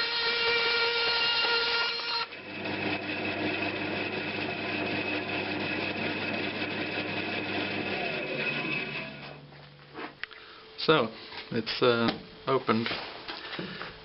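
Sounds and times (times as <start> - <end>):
power tool motor running: 0.0 - 9.4.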